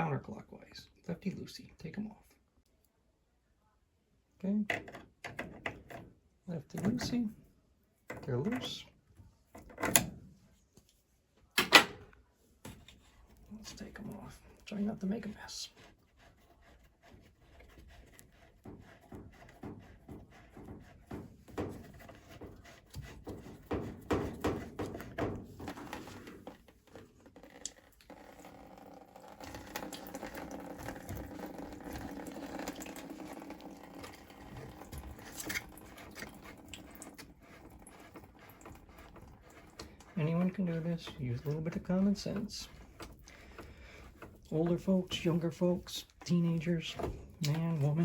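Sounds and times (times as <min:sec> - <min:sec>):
hoses clicking and knocking: 0:16.6 - 0:48.0
water draining into a bucket: 0:27.4 - 0:40.5.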